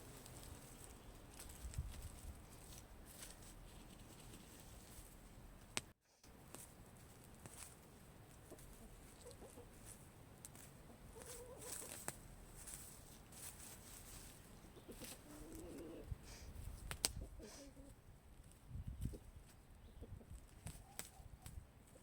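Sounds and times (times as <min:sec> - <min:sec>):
hens clucking faintly: 0:08.4 - 0:09.9, 0:14.5 - 0:16.2.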